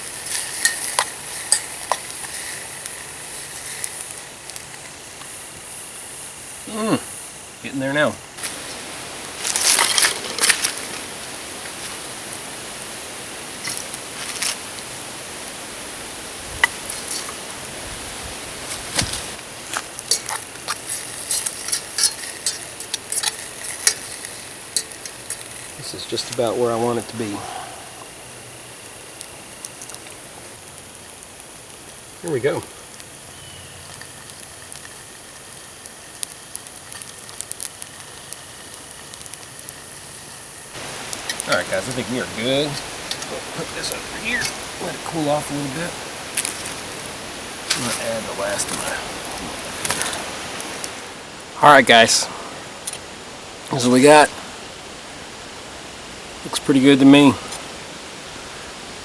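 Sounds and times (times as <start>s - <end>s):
scrapes or crackles: 0.0s - 5.4s, 8.4s - 12.0s, 16.5s - 17.6s, 18.6s - 26.4s, 33.9s - 51.1s
food sizzling in a pot: 0.0s - 59.0s.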